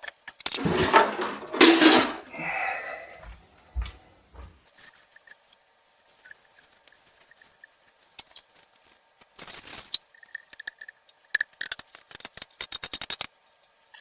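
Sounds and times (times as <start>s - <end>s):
tool scraping fitting: 0.6s - 2.4s.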